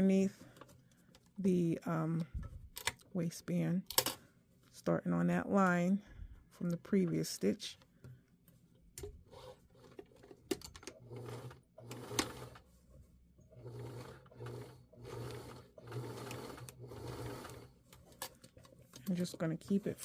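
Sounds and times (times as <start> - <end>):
sewing machine stitching: 10.9 - 12.6, 13.5 - 17.8.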